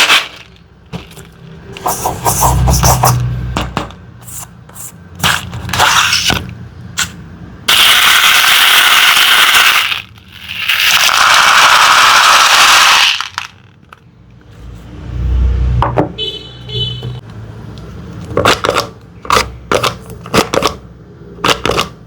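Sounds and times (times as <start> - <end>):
small hard objects clicking: 7.7 - 14.1.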